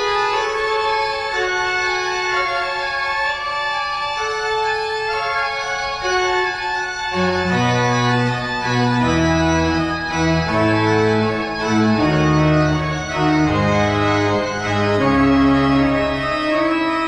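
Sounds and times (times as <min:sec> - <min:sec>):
low organ bass notes: 0:00.0 - 0:17.0
organ sustained chords: 0:00.0 - 0:17.0.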